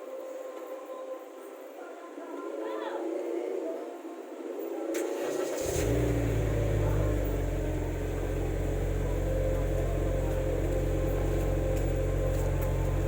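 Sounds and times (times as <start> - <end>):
car engine idling: 5.0 - 13.0.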